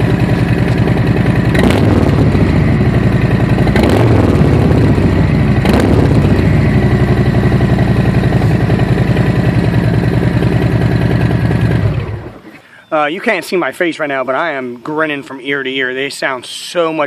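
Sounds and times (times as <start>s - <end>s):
motorcycle engine idling and revving: 0.0s - 12.5s.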